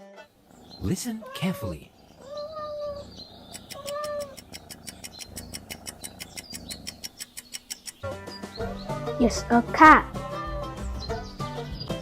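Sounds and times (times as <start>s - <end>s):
cat meowing: 0.6s - 5.0s
fast even ticking: 3.3s - 8.2s.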